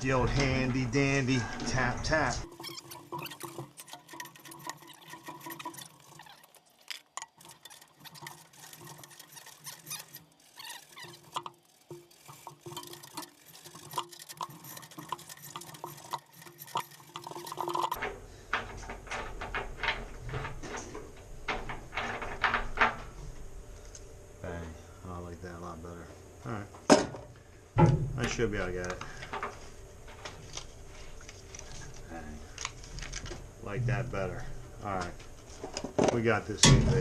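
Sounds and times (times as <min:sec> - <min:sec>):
metallic clicks and scraping: 0:00.0 - 0:23.2.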